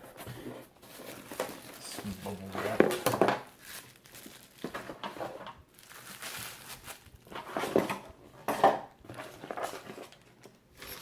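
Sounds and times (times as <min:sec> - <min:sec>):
plastic packaging crinkling: 0:00.8 - 0:08.0, 0:09.0 - 0:11.0.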